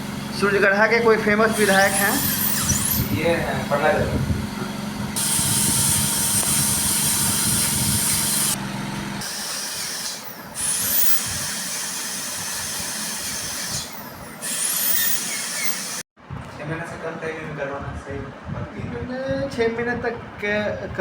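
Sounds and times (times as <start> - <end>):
dental drill whining: 0.5 - 8.6, 9.2 - 16.1.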